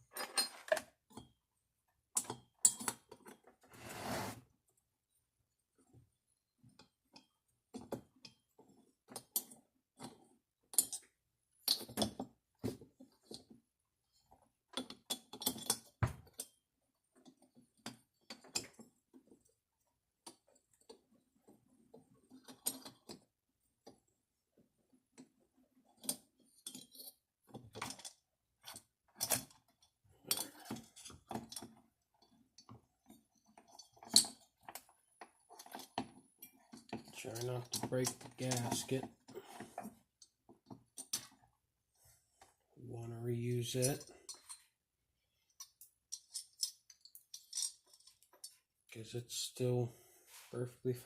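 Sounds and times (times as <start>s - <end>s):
metal parts clinking and rattling: 0.1s - 0.9s, 45.5s - 48.6s.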